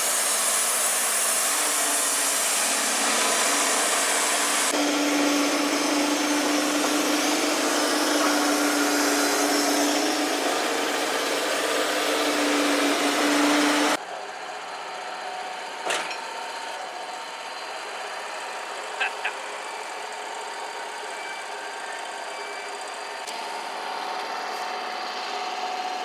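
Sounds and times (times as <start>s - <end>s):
band sawmill cutting: 0.0s - 14.0s, 16.8s - 26.0s
engine running quietly: 2.9s - 14.0s.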